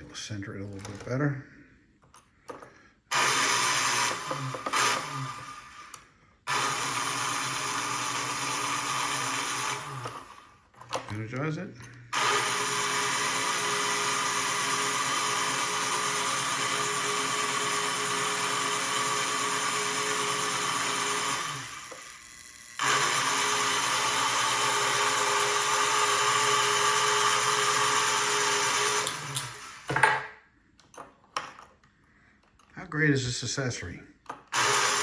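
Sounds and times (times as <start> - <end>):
toy crane motor running: 3.1 - 10.5, 12.1 - 29.8, 34.5 - 35.0.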